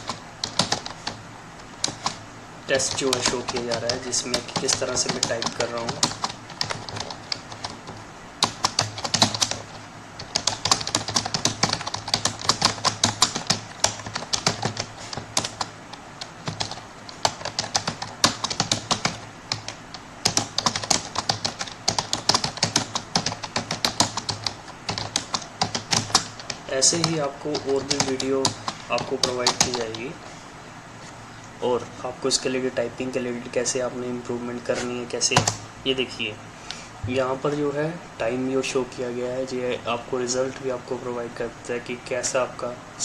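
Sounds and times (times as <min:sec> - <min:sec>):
computer keyboard typing: 0:00.0 - 0:01.2, 0:01.8 - 0:30.1, 0:35.2 - 0:35.6.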